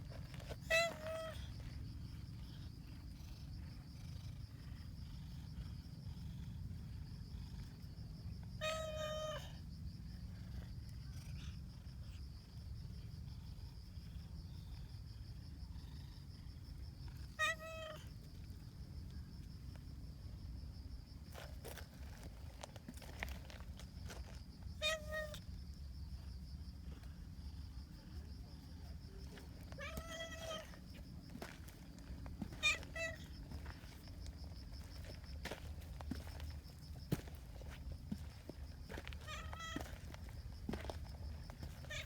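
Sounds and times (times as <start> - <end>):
cat meowing: 0.6 - 1.4, 8.6 - 9.5, 17.4 - 18.0, 24.8 - 25.4, 29.8 - 30.8, 32.6 - 33.3, 39.2 - 39.8.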